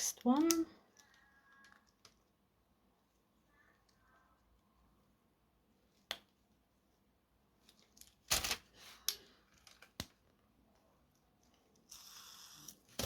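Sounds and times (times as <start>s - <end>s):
plastic parts clicking together: 0.0s - 2.4s, 7.6s - 10.3s.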